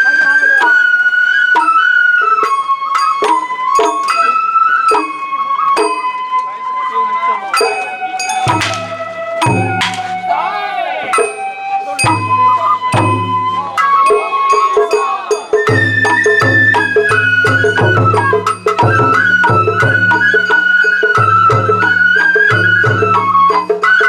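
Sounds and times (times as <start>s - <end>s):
sharp percussion strokes: 0.0s - 6.6s, 7.3s - 24.0s
bamboo flute long notes: 0.0s - 24.0s
drum strikes: 8.4s - 10.5s, 12.0s - 24.0s.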